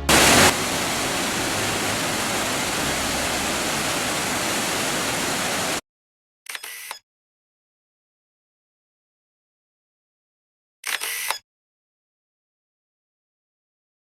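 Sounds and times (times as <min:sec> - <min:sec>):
waterfall roaring: 0:00.0 - 0:05.8.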